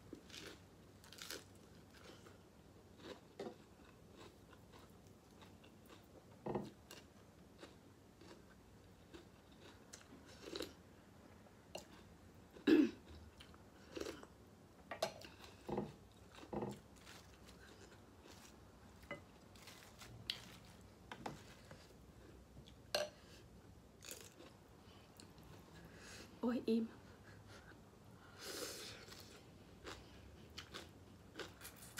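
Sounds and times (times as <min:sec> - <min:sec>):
person chewing and eating: 0:00.0 - 0:10.9, 0:11.6 - 0:14.4, 0:15.2 - 0:25.8, 0:28.6 - 0:31.9.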